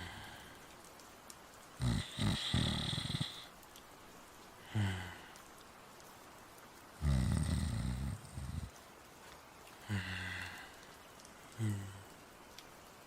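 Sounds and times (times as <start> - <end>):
person imitating snoring: 1.8 - 3.5, 7.0 - 8.7.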